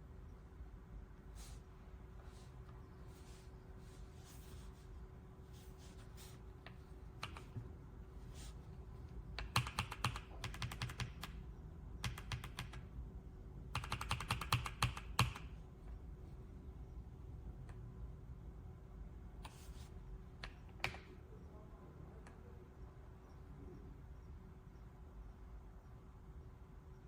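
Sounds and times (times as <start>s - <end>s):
typing on mechanical keyboard: 7.2s - 7.6s, 9.4s - 11.4s, 12.0s - 12.9s, 13.7s - 15.6s.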